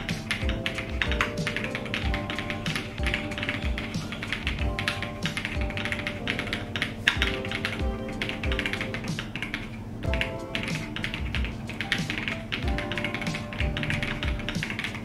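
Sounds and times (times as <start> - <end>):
background music: 0.0 - 15.0
mechanical keyboard typing: 0.0 - 15.0.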